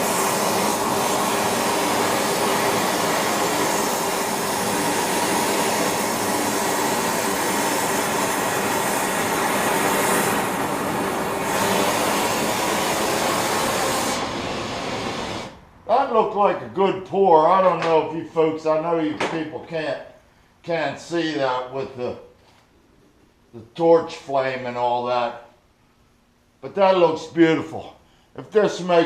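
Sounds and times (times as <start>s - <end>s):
gas torch flame hissing: 0.0s - 15.7s.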